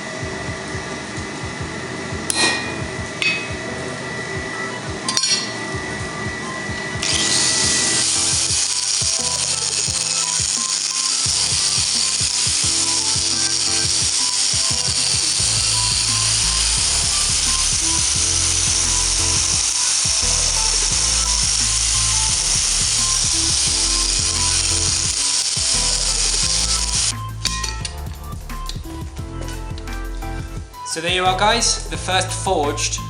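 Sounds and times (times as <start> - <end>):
background music: 0.0 - 33.0
power tool grinding metal: 6.9 - 30.5.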